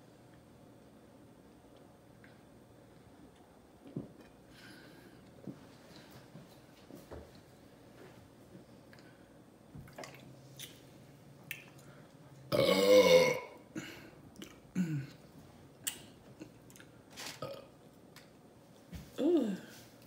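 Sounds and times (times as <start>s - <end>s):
woman burping: 12.5s - 14.0s, 14.7s - 15.2s, 17.4s - 17.7s, 19.2s - 19.7s.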